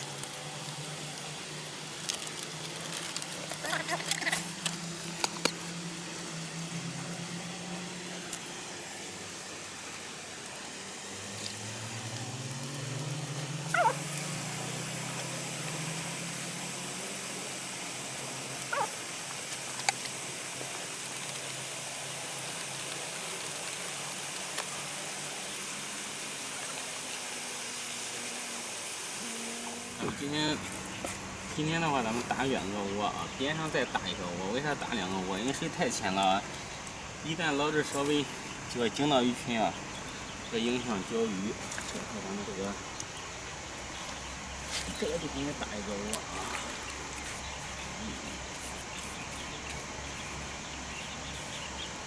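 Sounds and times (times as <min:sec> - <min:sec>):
low drone: 0:00.0 - 0:52.0
outdoor hiss: 0:00.0 - 0:52.0
dog yelping: 0:13.7 - 0:14.1, 0:18.7 - 0:19.0.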